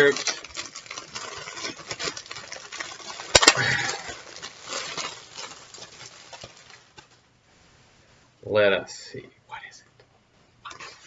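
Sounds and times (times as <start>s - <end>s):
packaging rustling and crinkling: 0.0s - 7.3s, 10.6s - 11.0s.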